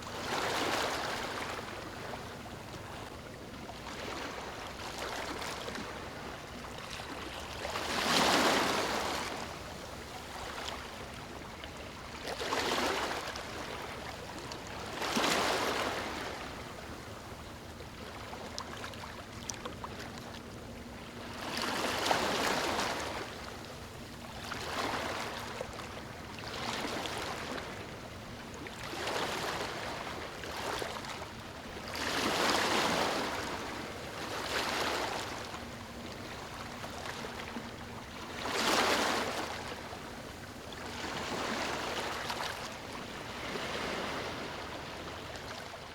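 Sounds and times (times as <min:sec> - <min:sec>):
small waves breaking on sand: 0:00.0 - 0:03.1, 0:03.8 - 0:17.0, 0:21.3 - 0:23.6, 0:31.8 - 0:45.9.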